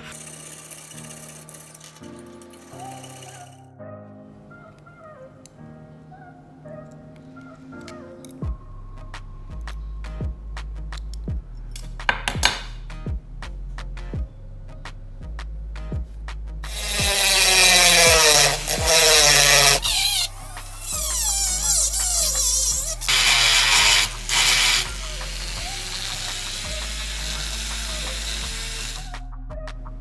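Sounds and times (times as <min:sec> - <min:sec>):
power tool motor running: 0:00.0 - 0:03.6, 0:16.7 - 0:29.2
background music: 0:00.0 - 0:30.0.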